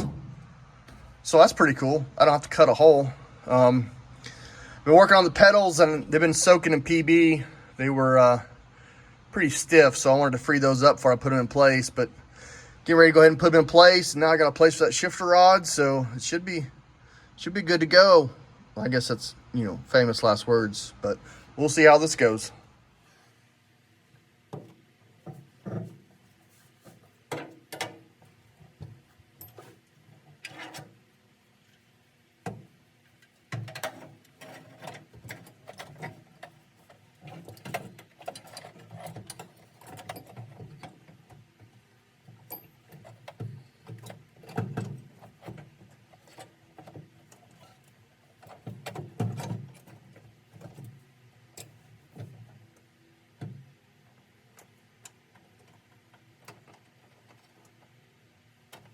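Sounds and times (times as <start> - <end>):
hand tools clicking and clunking on metal: 24.5 - 31.1, 32.4 - 58.0.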